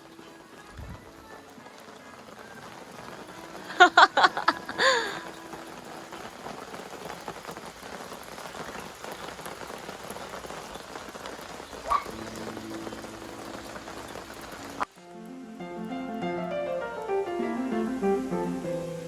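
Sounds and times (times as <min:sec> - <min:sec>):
steady rain falling: 0:00.0 - 0:19.0
acoustic guitar music: 0:12.0 - 0:19.0.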